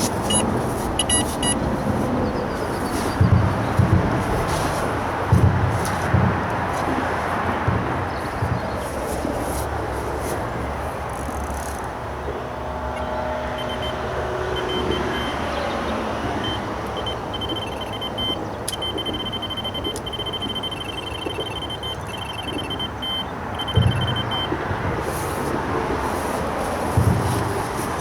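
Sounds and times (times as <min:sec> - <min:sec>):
road traffic rumble: 0:00.0 - 0:28.0
bite alarm short high beeps: 0:00.3 - 0:01.6, 0:13.0 - 0:24.6.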